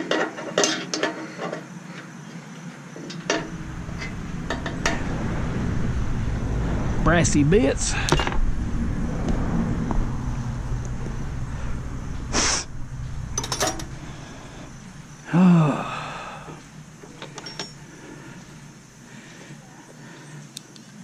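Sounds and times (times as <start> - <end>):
vehicle rumble: 3.0 - 20.7
wordless sigh or gasp: 15.3 - 16.6.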